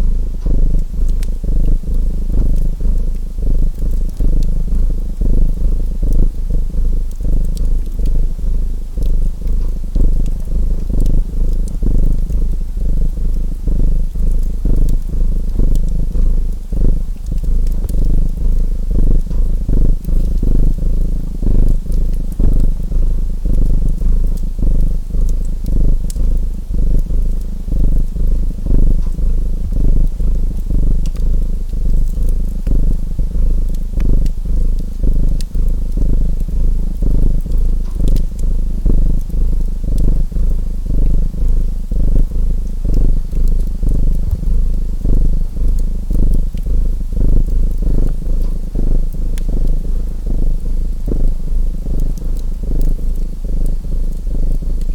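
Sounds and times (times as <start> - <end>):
cat purring: 0.0 - 54.9
wood fire crackling: 0.0 - 54.9.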